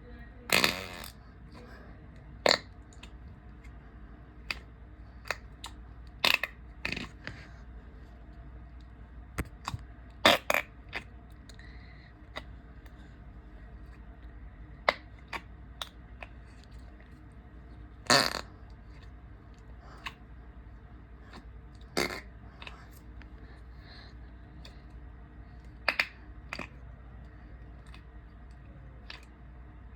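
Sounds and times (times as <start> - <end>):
fart noises: 0.5 - 1.3, 2.4 - 2.8, 6.2 - 7.2, 10.2 - 11.1, 18.0 - 18.6, 21.9 - 22.4.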